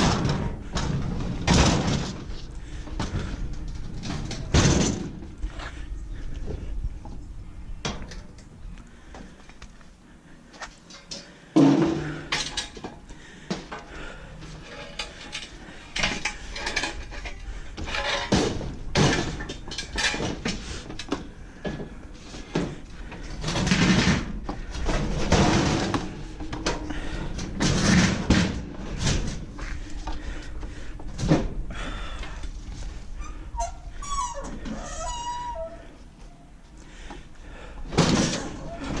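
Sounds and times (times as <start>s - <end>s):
scrap metal clanking: 14.4s - 20.8s.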